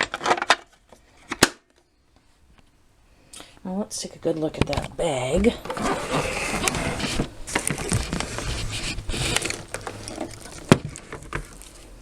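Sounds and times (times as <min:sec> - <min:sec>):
cloth bag rustling: 0:05.6 - 0:10.8.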